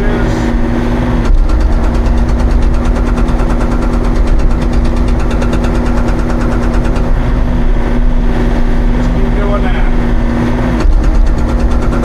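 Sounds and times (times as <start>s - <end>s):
excavator engine running: 0.0s - 12.0s
hydraulic hammer breaking rock: 1.2s - 7.2s, 10.8s - 12.0s.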